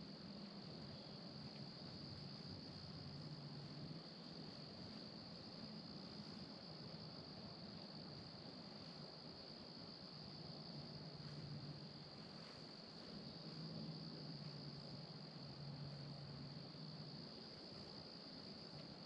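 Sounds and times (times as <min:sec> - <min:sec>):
faint low hum: 0:00.0 - 0:19.0
insects trilling: 0:00.0 - 0:19.0.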